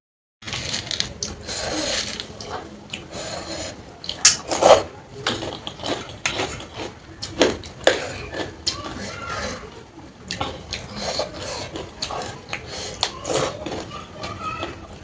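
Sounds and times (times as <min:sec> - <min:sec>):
person chewing and smacking: 0:04.0 - 0:04.5, 0:05.3 - 0:09.0, 0:10.3 - 0:15.0.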